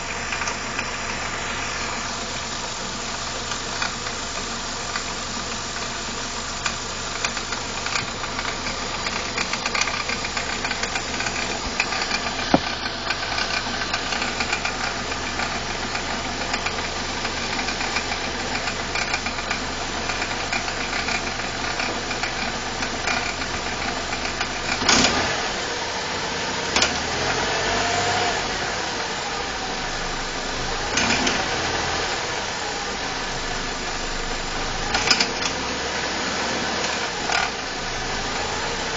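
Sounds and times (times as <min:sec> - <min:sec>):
intake rattle: 0:00.0 - 0:25.2
car engine running: 0:00.0 - 0:38.9.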